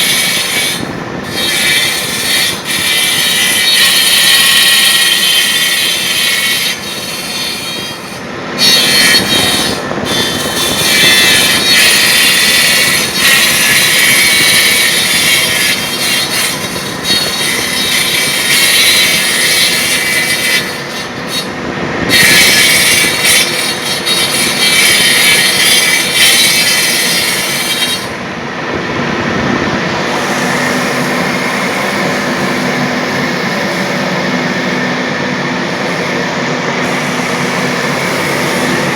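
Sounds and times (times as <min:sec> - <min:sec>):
tool hissing on spinning wood: 0:00.0 - 0:21.5, 0:22.1 - 0:28.2, 0:35.5 - 0:38.9
lathe machine running: 0:00.0 - 0:38.9.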